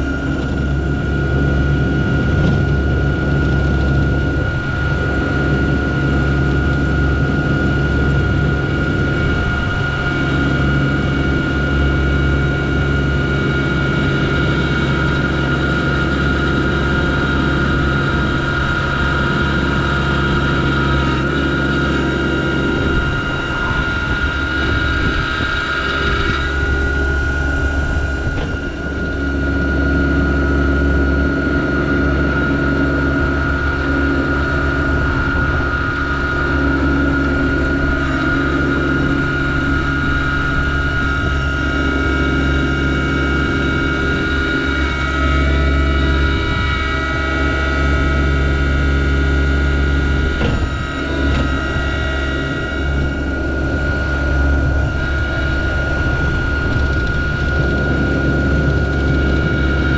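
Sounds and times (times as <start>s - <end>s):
steady high whine: 0.0s - 59.9s
tractor diesel engine running: 0.0s - 59.9s.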